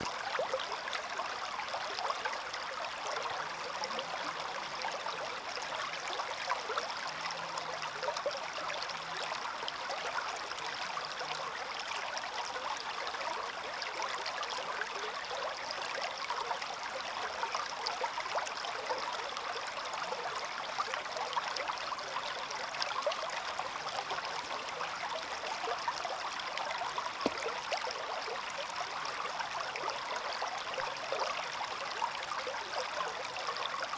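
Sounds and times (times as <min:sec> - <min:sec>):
stream babbling over stones: 0:16.6 - 0:33.9.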